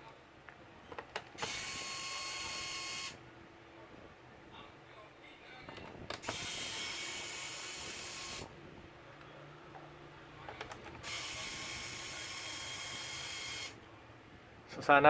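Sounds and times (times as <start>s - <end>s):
electric screwdriver running: 1.4s - 3.2s, 6.2s - 8.5s, 11.0s - 13.8s.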